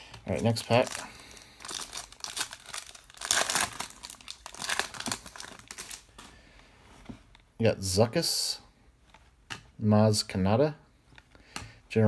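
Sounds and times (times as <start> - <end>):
card pack wrapper tearing and crinkling: 0.3 - 6.2.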